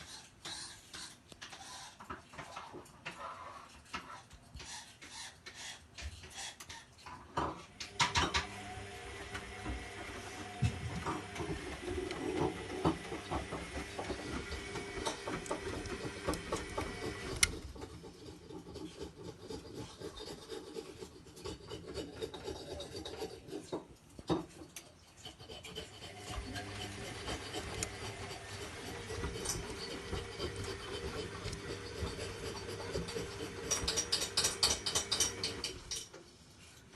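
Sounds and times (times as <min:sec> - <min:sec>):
washing machine drum tumbling: 0:09.4 - 0:17.4.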